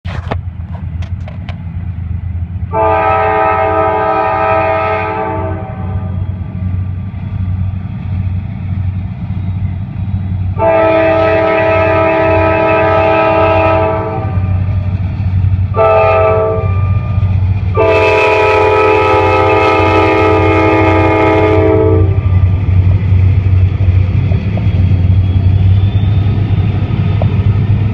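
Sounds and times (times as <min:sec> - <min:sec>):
locomotive engine rumble: 0:00.0 - 0:27.9
locomotive air horn blasts: 0:02.7 - 0:06.3, 0:10.6 - 0:14.7, 0:15.7 - 0:22.3.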